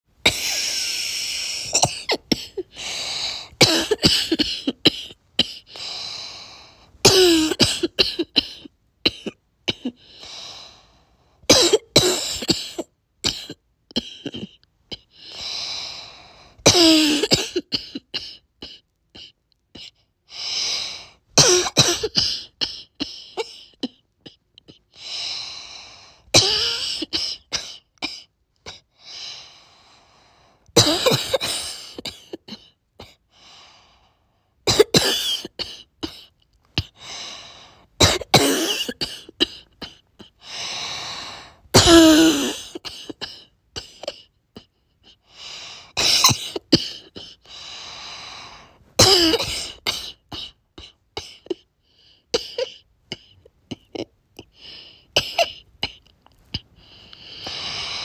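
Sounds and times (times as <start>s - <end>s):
whiny high-pitched breaths: 0.2s - 1.8s
barky coughing: 3.6s - 5.6s, 7.1s - 10.0s, 11.5s - 14.6s, 16.7s - 19.3s, 21.4s - 24.8s, 30.8s - 33.2s, 34.7s - 36.3s, 38.0s - 40.1s, 41.8s - 44.2s, 46.0s - 47.4s, 49.0s - 51.6s.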